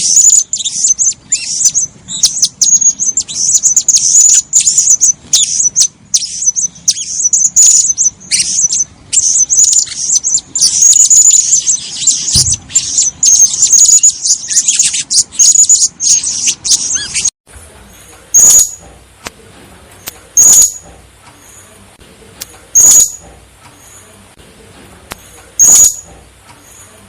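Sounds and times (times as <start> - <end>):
parrot high thin chirps: 0.0 - 17.3, 25.6 - 26.1
parrot sharp high calls: 0.0 - 17.3, 22.8 - 23.2, 25.6 - 26.1.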